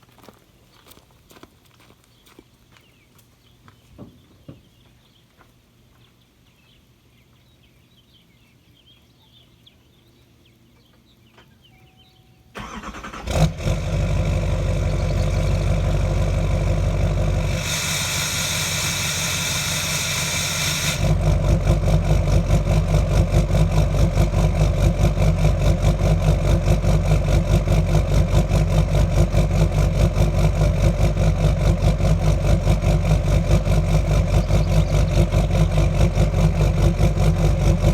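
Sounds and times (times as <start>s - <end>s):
diesel engine cranking and starting: 12.6s - 37.9s
diesel engine idling: 12.6s - 37.9s.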